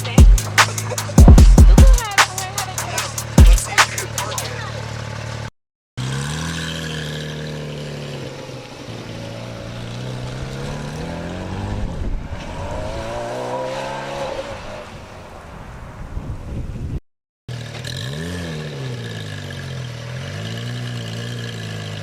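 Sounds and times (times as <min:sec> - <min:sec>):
race car engine accelerating: 0:02.6 - 0:15.2.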